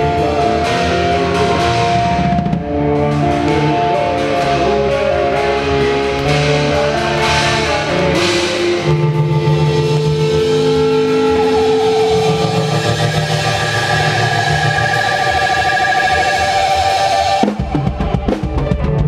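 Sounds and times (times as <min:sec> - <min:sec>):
drums: 0:00.0 - 0:19.0
electric guitar chords: 0:00.0 - 0:19.0
live rock band playing: 0:00.0 - 0:19.0.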